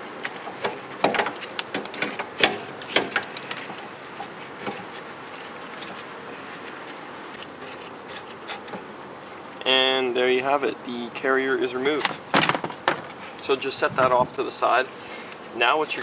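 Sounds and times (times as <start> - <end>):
quiet handling noise: 11.0 - 16.0.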